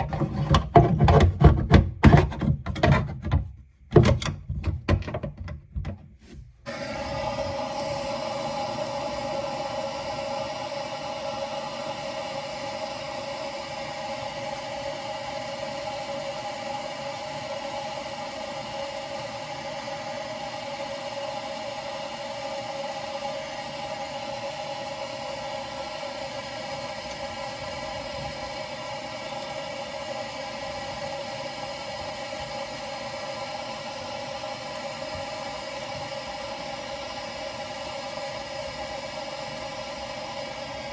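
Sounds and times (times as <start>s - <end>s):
blowtorch flame hissing: 6.6s - 40.9s.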